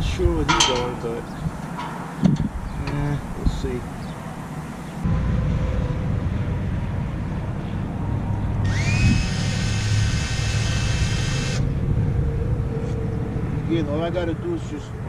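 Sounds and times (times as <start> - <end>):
electric drill whining into metal: 8.7 - 11.6.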